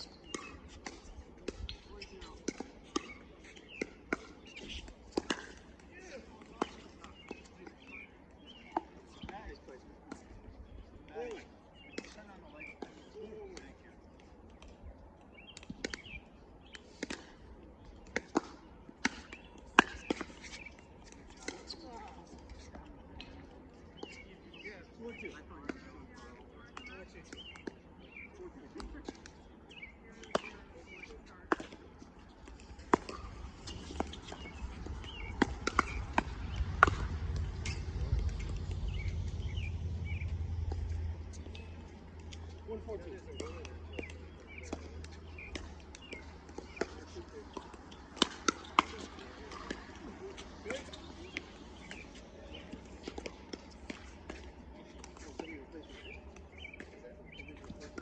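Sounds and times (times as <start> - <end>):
birds chirping: 0.0 - 58.0
ball hits and bounces: 32.4 - 41.8, 42.7 - 58.0
low rumble: 34.7 - 42.2.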